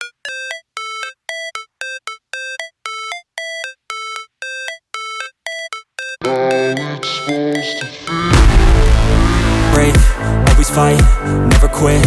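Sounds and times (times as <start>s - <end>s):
synthesizer playing clipped notes: 6.2s - 11.2s.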